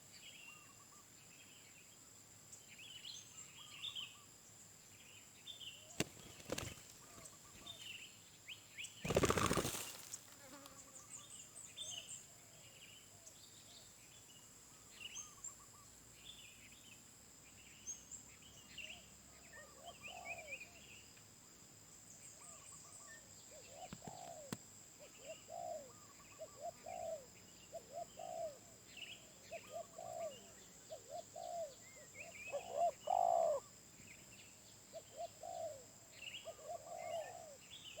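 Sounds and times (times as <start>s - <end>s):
small birds chirping: 2.5s - 17.0s
dove cooing: 9.1s - 10.0s, 23.6s - 24.6s, 25.2s - 28.6s, 29.5s - 31.8s, 32.5s - 33.7s, 35.0s - 35.8s, 36.4s - 37.6s.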